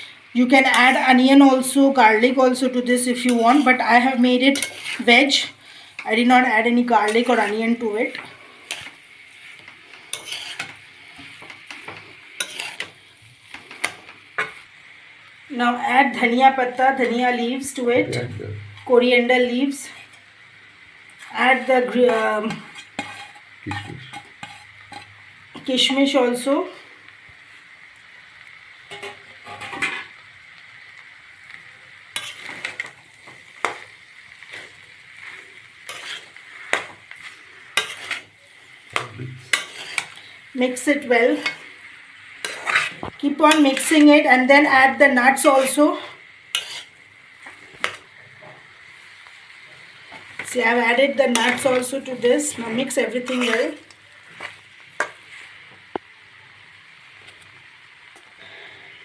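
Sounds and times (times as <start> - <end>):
faint sizzle: 0.0 - 59.0
utensil scraping a frying pan: 3.0 - 14.7, 21.2 - 25.2, 28.9 - 30.2, 32.1 - 44.5, 45.2 - 55.6.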